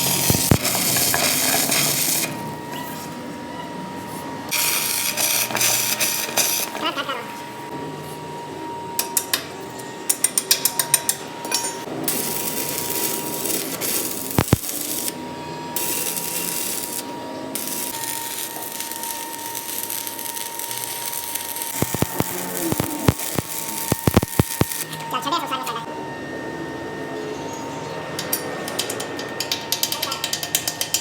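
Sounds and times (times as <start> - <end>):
metal lathe whining: 11.3 - 25.1.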